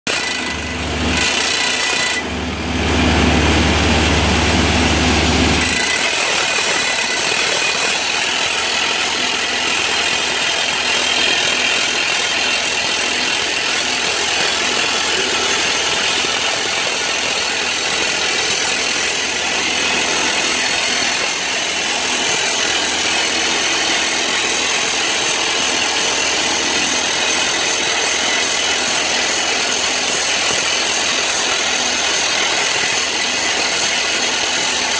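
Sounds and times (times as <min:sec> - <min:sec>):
hydraulic drill running: 0:00.0 - 0:34.9.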